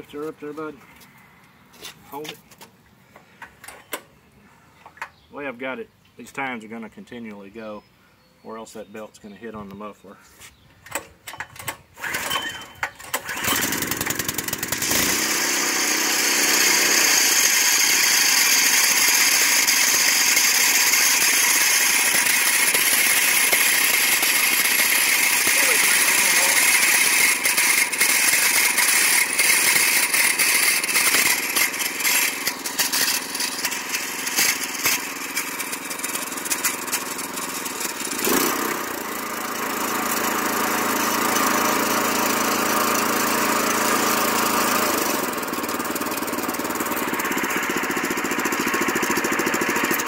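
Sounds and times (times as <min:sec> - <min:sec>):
small gas engine running: 0:12.0 - 0:50.0.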